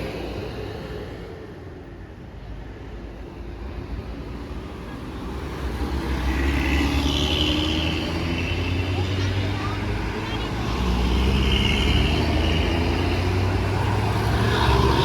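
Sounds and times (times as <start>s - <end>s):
vehicle engine rumble passing: 4.8s - 15.0s.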